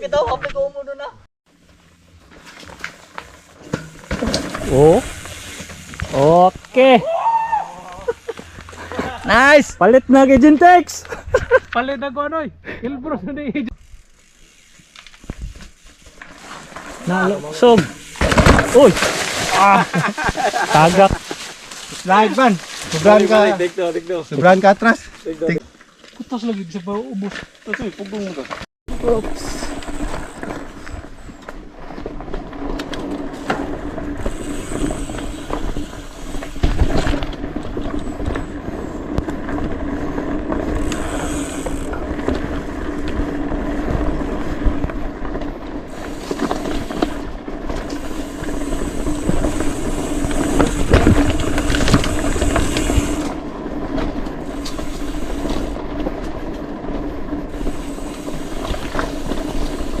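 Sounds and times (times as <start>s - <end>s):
bicycle freehub ratcheting buzz: 4.6s - 6.8s, 13.7s - 18.3s, 28.9s - 31.5s, 32.8s - 44.6s, 45.8s - 53.5s, 54.3s - 56.4s, 57.0s - 60.0s
tyre and drivetrain rattle: 27.2s - 60.0s.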